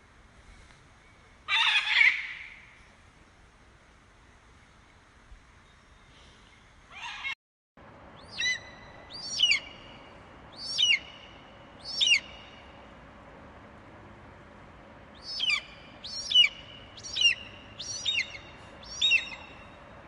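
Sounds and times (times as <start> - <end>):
bird whistling call: 8.2 - 12.6, 15.2 - 19.8.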